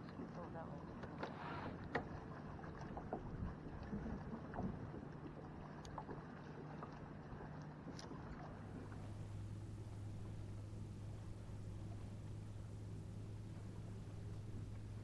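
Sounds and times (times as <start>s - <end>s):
water against kayak hull: 0.0s - 15.0s
low steady hum: 8.2s - 15.0s.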